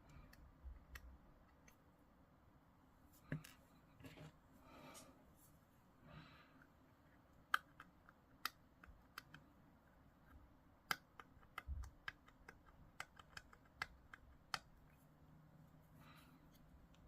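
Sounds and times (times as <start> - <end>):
plastic parts clicking and tapping: 10.2 - 14.8.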